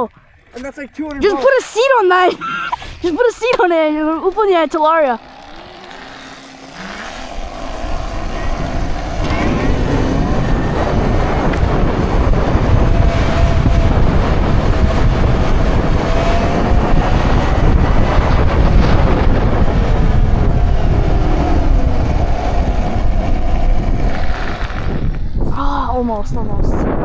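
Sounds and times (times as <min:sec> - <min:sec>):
faint electric motor whine: 0:01.8 - 0:25.5
wind over microphone: 0:06.6 - 0:27.0.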